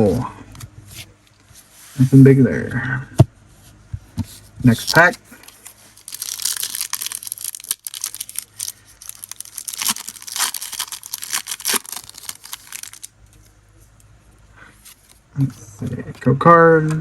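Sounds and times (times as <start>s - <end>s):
wrapper tearing and crinkling: 4.8s - 13.1s.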